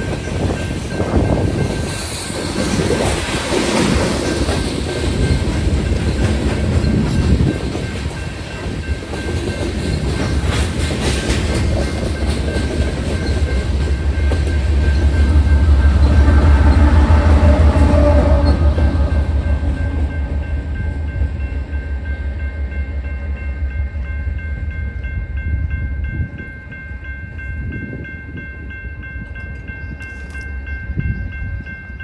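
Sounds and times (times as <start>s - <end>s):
train wheels clicking over rails: 0.0s - 20.2s.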